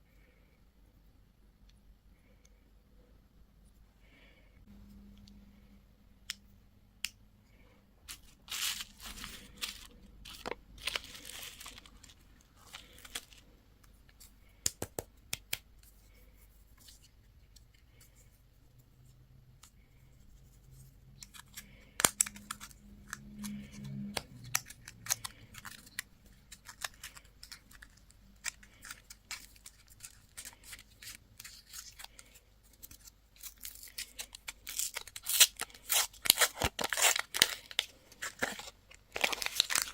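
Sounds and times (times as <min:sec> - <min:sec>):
packaging torn and crinkled: 0:08.1 - 0:13.4, 0:21.2 - 0:39.9.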